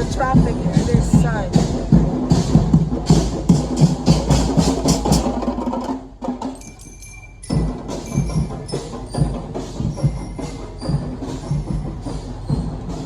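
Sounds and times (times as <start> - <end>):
background music with percussive beat: 0.0 - 13.0
high chiming notes: 6.5 - 12.8.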